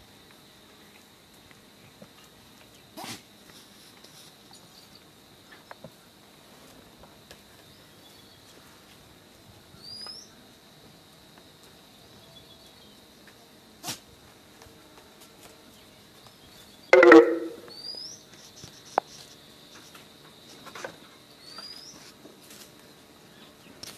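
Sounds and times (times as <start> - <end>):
high insect drone: 0.0 - 23.9
faint bird chirps: 9.8 - 10.4, 16.4 - 19.4, 21.4 - 22.1.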